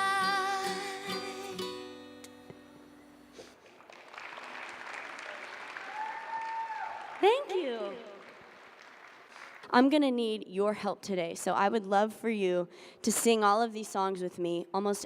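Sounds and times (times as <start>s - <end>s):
woman singing: 0.0s - 1.7s
acoustic guitar strumming: 0.0s - 3.4s
audience applause: 3.6s - 9.7s
crowd cheering: 3.7s - 9.7s.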